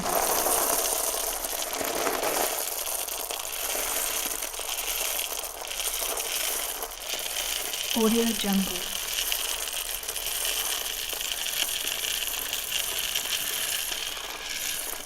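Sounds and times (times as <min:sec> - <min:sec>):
coffee beans spilling on ground: 0:00.0 - 0:15.0.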